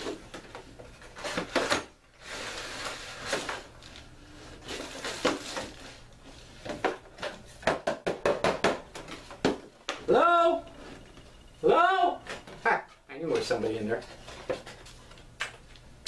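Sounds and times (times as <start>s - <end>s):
cardboard and plastic rustling: 0.0s - 7.7s, 12.3s - 15.8s.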